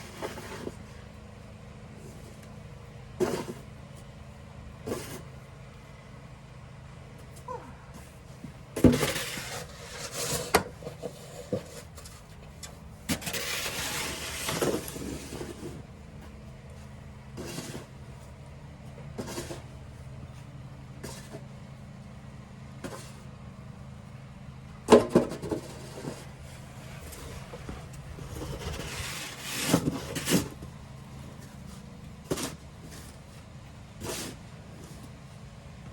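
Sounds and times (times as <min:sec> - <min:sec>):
snow shovel scraping pavement: 0:00.0 - 0:00.8, 0:03.2 - 0:03.7, 0:04.8 - 0:05.3, 0:08.8 - 0:12.2, 0:13.1 - 0:15.9, 0:17.3 - 0:18.1, 0:19.2 - 0:19.7, 0:25.4 - 0:30.7, 0:31.4 - 0:33.3, 0:34.0 - 0:35.0
steady low hum: 0:00.0 - 0:35.9.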